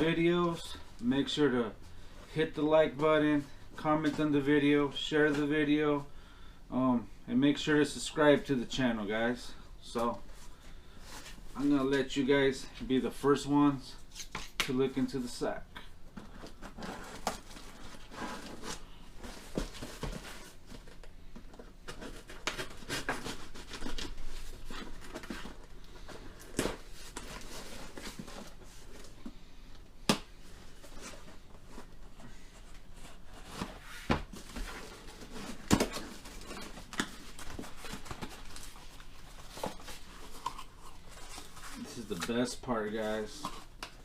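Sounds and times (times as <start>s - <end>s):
packaging rustling and crinkling: 30.6s - 44.0s.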